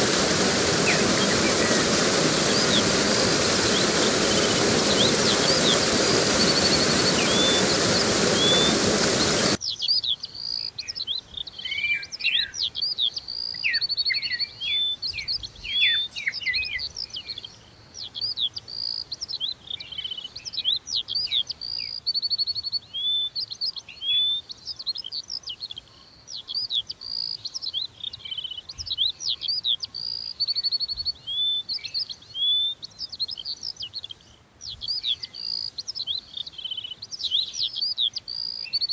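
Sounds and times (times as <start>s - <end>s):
birds calling: 0.0s - 9.6s
rushing water: 0.0s - 9.6s
chorus of songbirds: 0.0s - 38.9s.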